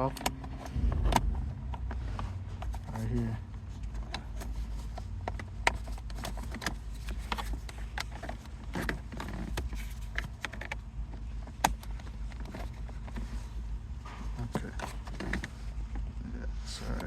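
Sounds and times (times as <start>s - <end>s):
low hum: 0.0s - 5.1s.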